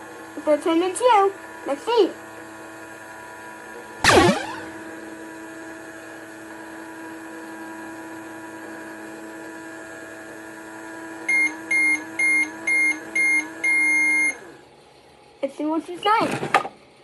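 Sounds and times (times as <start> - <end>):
short beeps: 4.0 - 4.8
electronic hum: 4.0 - 4.9.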